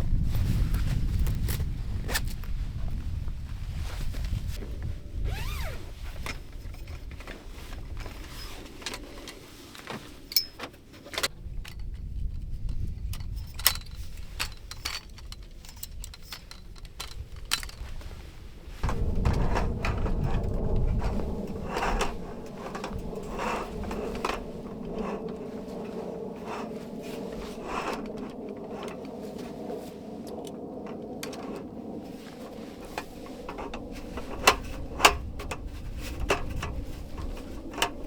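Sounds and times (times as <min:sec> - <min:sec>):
clicks and knocks of handled objects: 0:06.2 - 0:29.6, 0:30.2 - 0:38.0
low rumble: 0:18.2 - 0:38.0
steady hum with low tone: 0:18.6 - 0:38.0.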